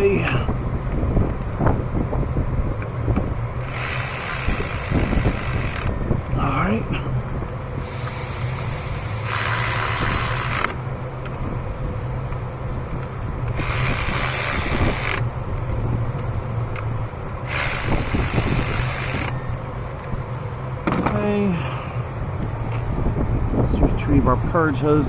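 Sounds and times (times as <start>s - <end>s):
low hum: 0.0s - 25.0s
ratchet wrench clicking: 3.6s - 5.9s, 7.8s - 10.8s, 13.5s - 15.2s, 17.4s - 19.4s.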